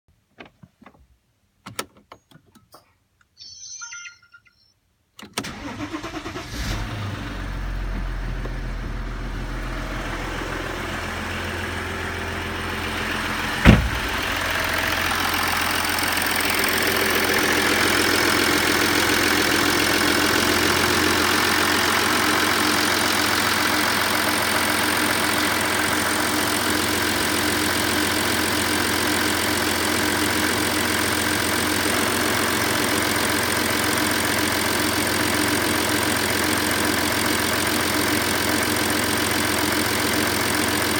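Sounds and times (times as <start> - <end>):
short high sound: 3.4 - 4.7
diesel engine cranking and idling: 5.4 - 40.9.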